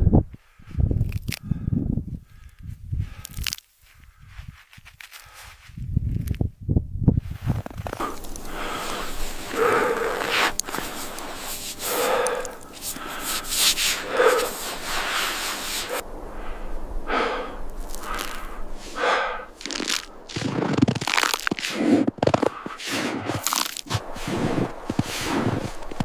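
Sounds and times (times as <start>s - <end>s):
heavy hoarse breathing: 7.8s - 26.0s.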